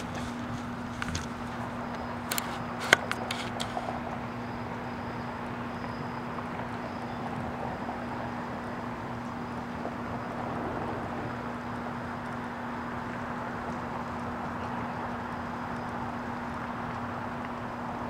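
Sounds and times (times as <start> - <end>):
sharp clicks: 0.0 - 4.8
steady low hum: 0.0 - 18.0.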